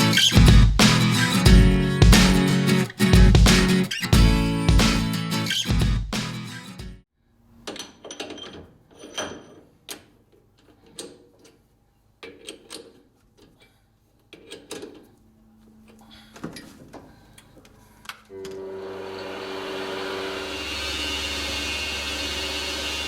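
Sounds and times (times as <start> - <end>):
tools and metal clicking: 12.2 - 13.6.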